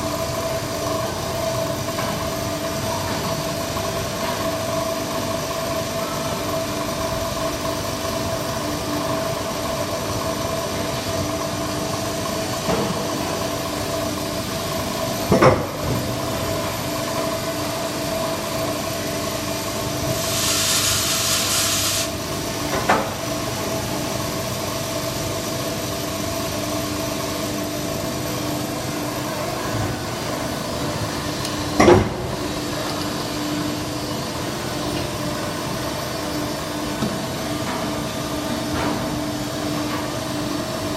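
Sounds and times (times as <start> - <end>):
hiss: 19.9 - 22.2.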